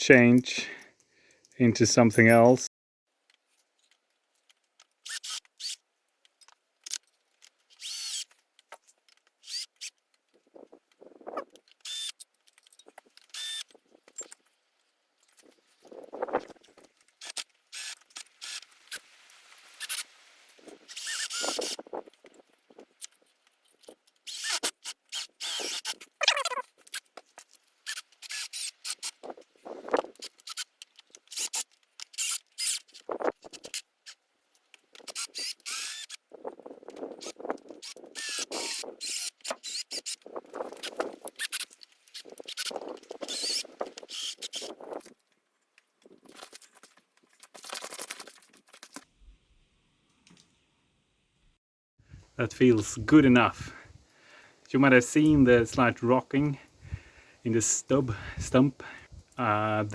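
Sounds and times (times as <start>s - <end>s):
screws squealing into wood: 5.0s - 5.8s, 7.7s - 8.3s, 11.8s - 12.2s, 13.3s - 14.3s, 20.8s - 21.9s, 24.2s - 27.1s, 27.8s - 29.3s, 31.3s - 33.8s, 35.1s - 36.2s, 37.2s - 44.8s.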